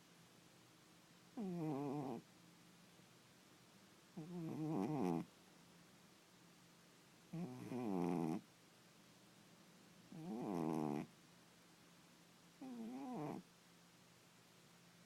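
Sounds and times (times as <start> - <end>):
cat snoring: 1.4 - 2.2, 4.2 - 5.3, 7.3 - 8.4, 10.1 - 11.1, 12.6 - 13.4.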